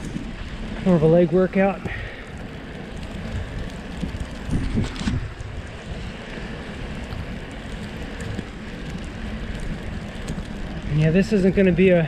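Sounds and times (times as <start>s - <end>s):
bike tyres rolling through snow: 0.0s - 12.0s
wind on microphone: 3.1s - 6.3s.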